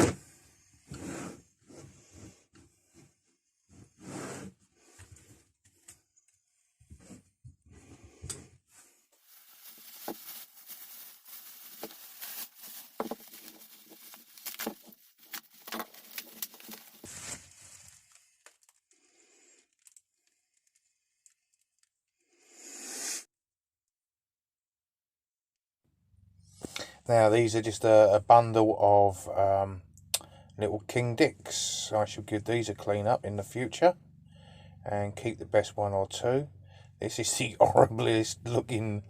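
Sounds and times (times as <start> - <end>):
rustles: 8.7 - 18.8
wrapping crackling and tearing: 9.2 - 19.0, 19.6 - 21.9.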